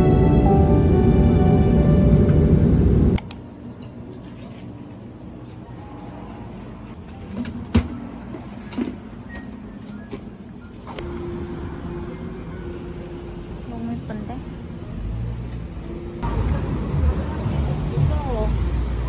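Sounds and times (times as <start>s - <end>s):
background music: 0.0s - 3.2s, 11.0s - 19.0s
low steady hum: 0.0s - 3.4s.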